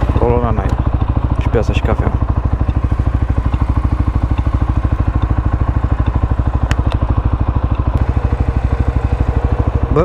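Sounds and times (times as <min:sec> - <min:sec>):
atv engine chugging: 0:00.0 - 0:10.0.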